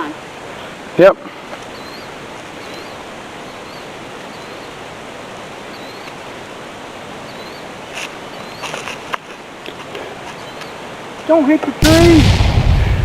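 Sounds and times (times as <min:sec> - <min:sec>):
stream flowing: 0:00.0 - 0:11.8
bird chirping: 0:01.6 - 0:04.8, 0:05.7 - 0:06.2, 0:07.2 - 0:09.0, 0:10.3 - 0:10.8.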